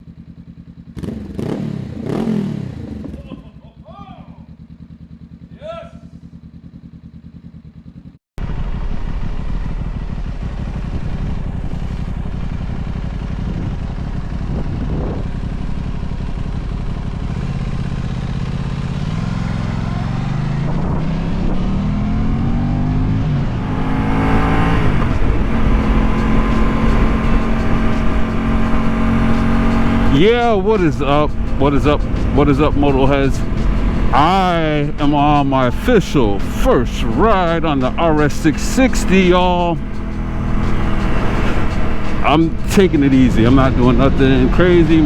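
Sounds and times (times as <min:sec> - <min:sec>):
motorcycle engine revving: 0:00.0 - 0:45.0
wind noise: 0:10.8 - 0:16.2, 0:20.4 - 0:22.1, 0:23.1 - 0:30.4.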